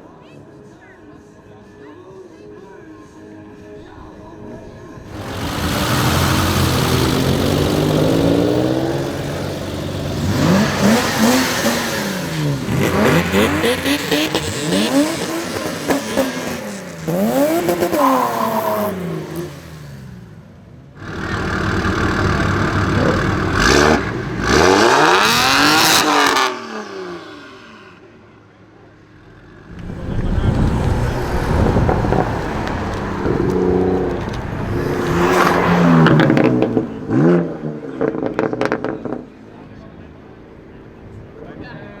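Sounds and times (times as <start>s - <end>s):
car engines revving: 5.0s - 28.3s, 28.9s - 41.3s
loud exhaust noise: 5.1s - 20.3s, 29.6s - 37.2s.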